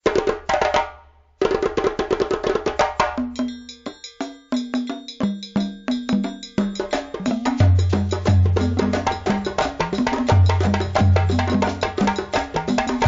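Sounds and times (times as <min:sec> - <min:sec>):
percussion strikes: 0:00.0 - 0:13.0.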